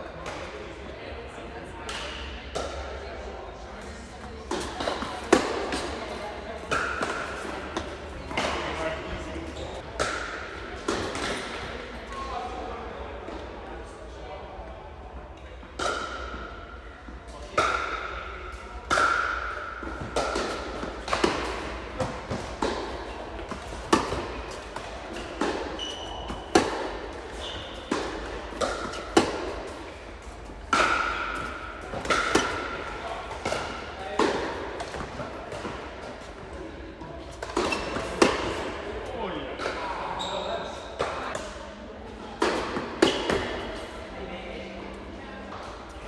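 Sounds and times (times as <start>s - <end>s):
tennis ball bouncing on court: 6.6s - 8.8s, 18.9s - 29.8s, 30.7s - 36.3s, 37.4s - 38.6s
tennis ball struck with rackets: 18.8s - 29.8s, 30.5s - 35.8s, 37.3s - 38.6s.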